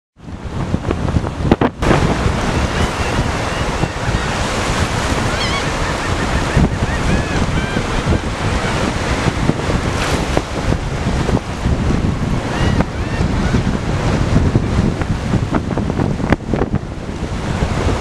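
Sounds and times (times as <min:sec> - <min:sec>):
surf: 0:00.2 - 0:18.0
wind buffeting microphone: 0:00.2 - 0:18.0
seagulls calling: 0:02.4 - 0:09.1, 0:12.4 - 0:13.7.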